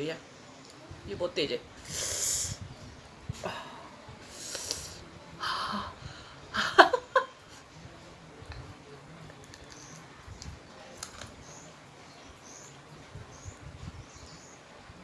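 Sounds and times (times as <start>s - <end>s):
woman breathing sharply with hisses: 1.8s - 2.6s.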